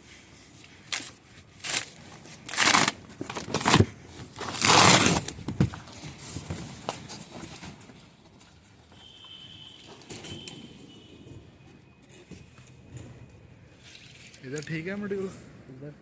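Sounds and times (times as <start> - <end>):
packaging rustling and scraping: 0.0 - 9.0.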